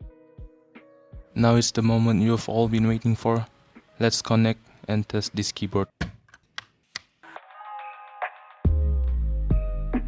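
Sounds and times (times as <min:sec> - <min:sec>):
soft background music: 0:00.0 - 0:06.0.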